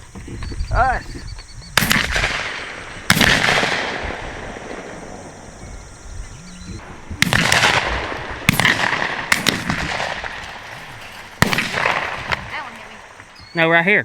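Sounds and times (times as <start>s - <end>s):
shotgun shots echoing: 1.8s - 5.6s, 6.8s - 13.4s.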